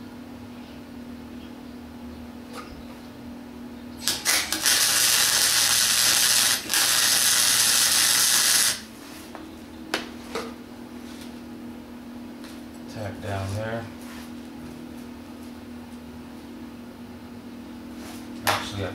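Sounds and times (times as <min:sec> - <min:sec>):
welder low hum: 0:02.6 - 0:18.9
welding arc sputtering and sizzling: 0:04.0 - 0:09.0.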